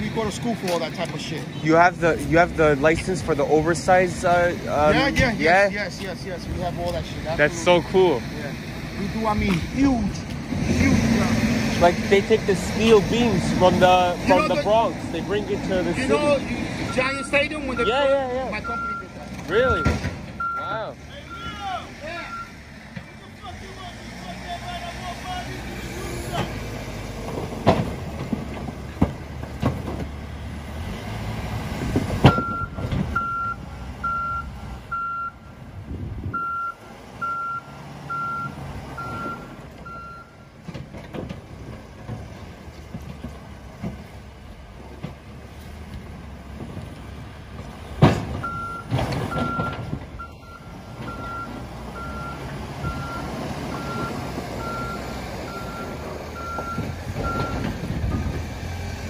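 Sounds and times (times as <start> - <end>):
reversing alarm beeping: 16.9 - 22.6, 32.3 - 35.6, 36.4 - 40.5, 48.4 - 58.3.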